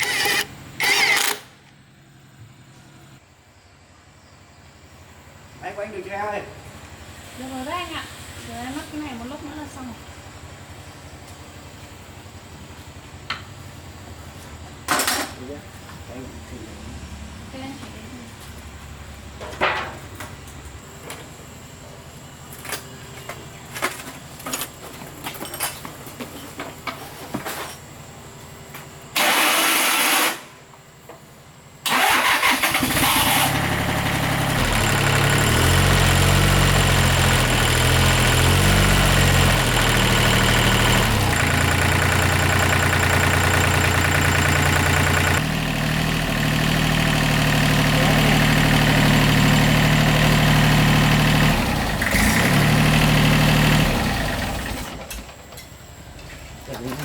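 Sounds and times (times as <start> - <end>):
machine engine starting and running: 0.0 - 3.2, 28.7 - 30.6, 31.8 - 55.9.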